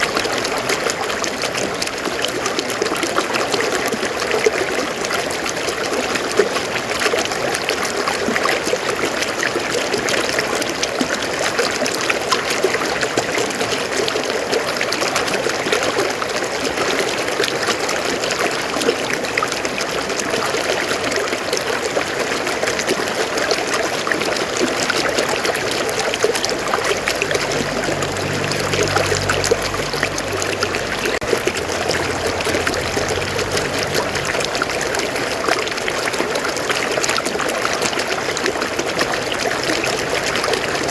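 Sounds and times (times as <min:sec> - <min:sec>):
river water flowing over rocks: 0:00.0 - 0:40.9
low hum: 0:24.9 - 0:36.9.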